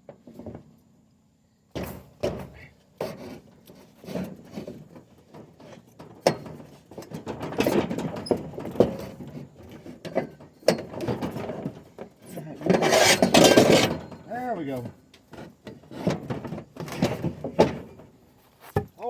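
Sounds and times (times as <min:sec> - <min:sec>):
metal tools knocking and scraping: 0:04.0 - 0:18.0.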